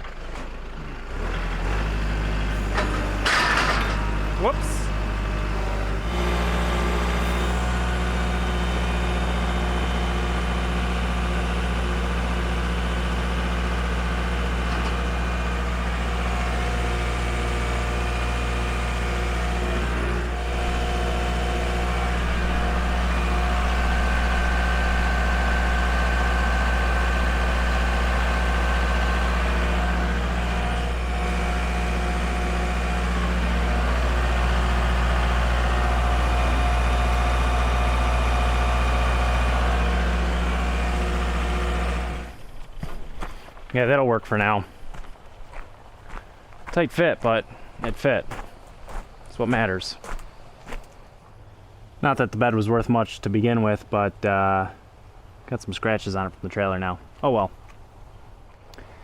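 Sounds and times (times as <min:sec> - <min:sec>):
engine idling: 0:00.0 - 0:42.6.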